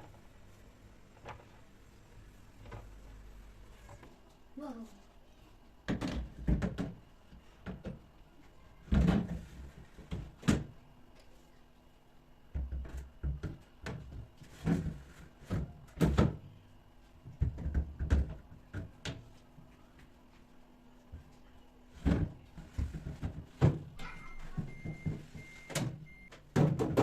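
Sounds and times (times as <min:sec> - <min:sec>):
knocks and clunks of household items: 0:05.8 - 0:07.0, 0:07.6 - 0:08.1, 0:08.8 - 0:10.7, 0:12.5 - 0:16.5, 0:17.2 - 0:19.3, 0:21.9 - 0:27.0.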